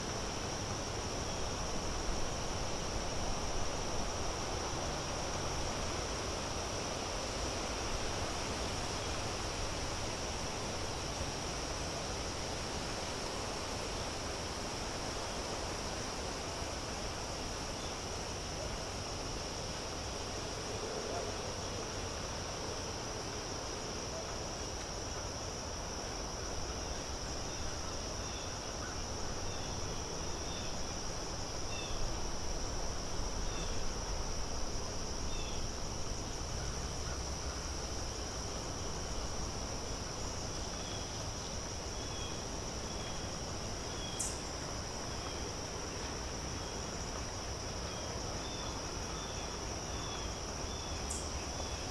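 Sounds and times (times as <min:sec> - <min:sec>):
soft background hiss: 0:00.0 - 0:51.9
high-pitched insect trill: 0:24.1 - 0:51.9.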